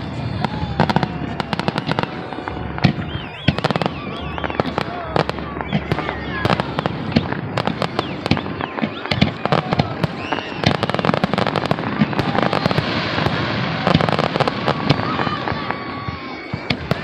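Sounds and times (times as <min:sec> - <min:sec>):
faint firework whistles: 0:00.0 - 0:17.0
fireworks bangs and cracks: 0:00.0 - 0:17.0
fireworks crackling: 0:00.0 - 0:17.0.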